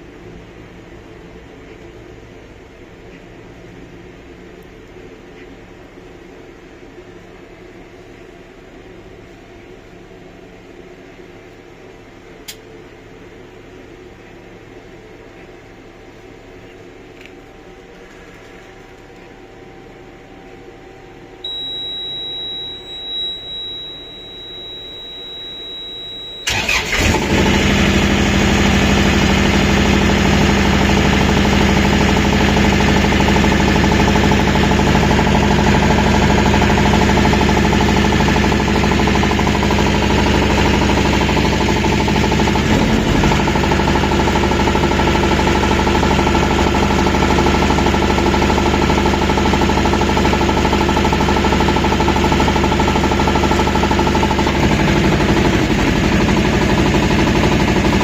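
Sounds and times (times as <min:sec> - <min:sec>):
steady high tone: 0:19.9 - 0:26.5
engine running loudly: 0:26.4 - 0:58.0
engine knocking: 0:26.5 - 0:58.0.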